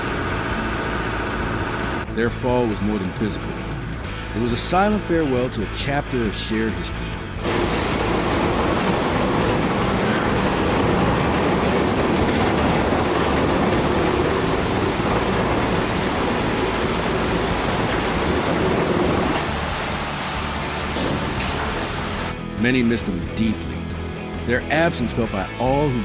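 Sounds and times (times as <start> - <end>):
rumble of falling concrete: 7.4 - 22.3.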